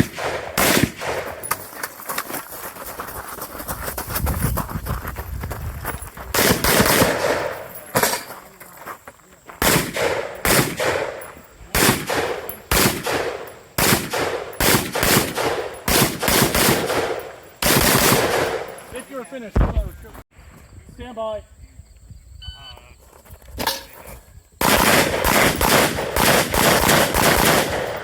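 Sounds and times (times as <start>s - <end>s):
rifle shots: 0.0s - 1.6s, 6.3s - 8.3s, 9.6s - 18.9s, 24.6s - 28.0s.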